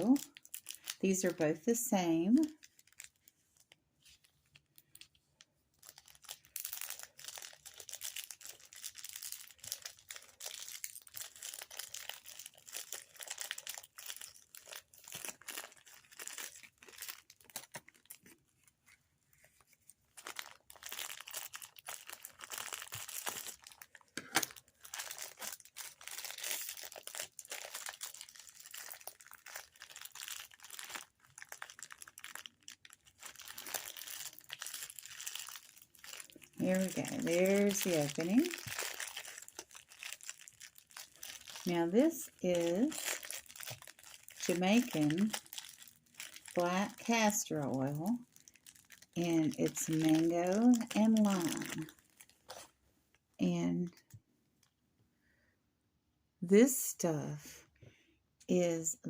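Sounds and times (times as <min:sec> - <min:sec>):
packaging crinkling and tearing: 0:00.0 - 0:01.3, 0:02.3 - 0:52.8
packaging snapping: 0:20.2 - 0:46.6.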